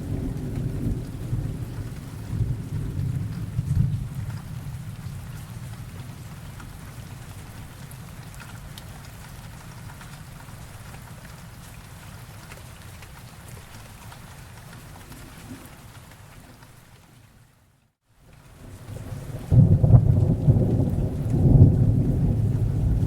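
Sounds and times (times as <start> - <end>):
thunder rumble: 0.0 - 6.9, 18.8 - 23.0
steady rain falling: 0.0 - 23.0.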